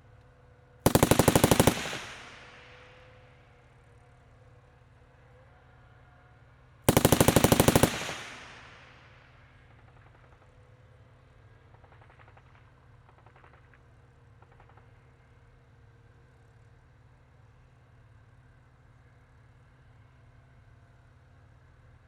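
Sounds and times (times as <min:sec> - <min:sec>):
low steady background noise: 0:00.0 - 0:22.0
automatic gunfire: 0:00.9 - 0:03.0, 0:06.9 - 0:09.0
distant automatic gunfire: 0:00.9 - 0:03.1, 0:06.9 - 0:09.2.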